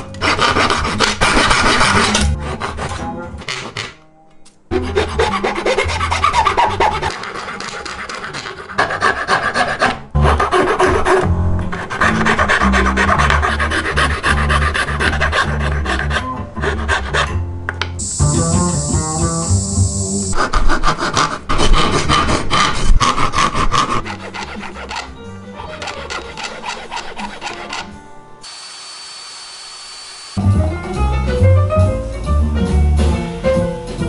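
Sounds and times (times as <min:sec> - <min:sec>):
wood being rasped and rubbed: 0:00.0 - 0:04.0, 0:04.7 - 0:17.4, 0:20.2 - 0:28.6
steady high hiss: 0:18.0 - 0:20.4.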